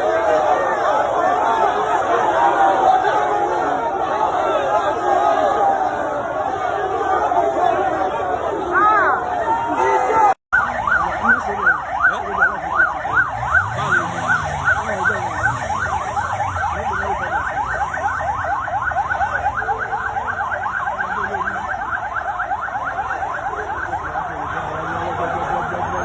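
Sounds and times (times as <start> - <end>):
electronic siren wailing: 10.6 - 26.0.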